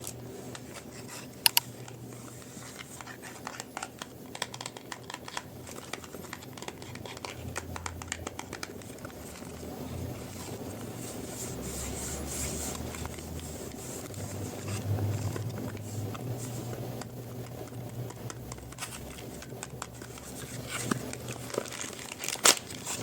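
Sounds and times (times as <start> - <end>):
wrapper crinkling and tearing: 18.4 - 23.0.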